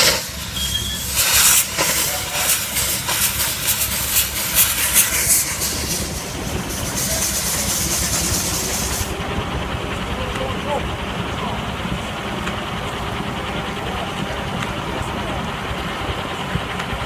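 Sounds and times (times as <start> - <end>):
rush of escaping steam: 0.0 - 9.9
low rumble: 0.0 - 17.0
steam engine exhaust puffs: 0.0 - 17.0.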